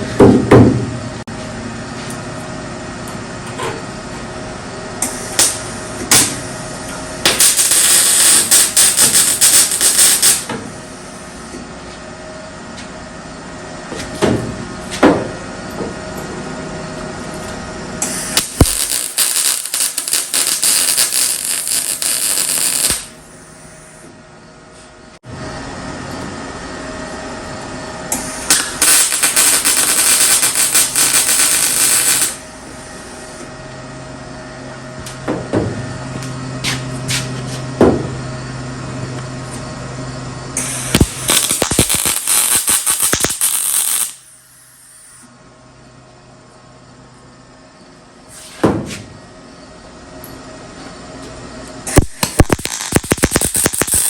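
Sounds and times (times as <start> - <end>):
steady hum: 0.0 - 48.4, 49.0 - 54.0
welding arc crackling: 5.1 - 6.4, 7.3 - 10.5, 18.0 - 23.2, 28.2 - 32.4, 40.6 - 44.2, 51.9 - 54.0.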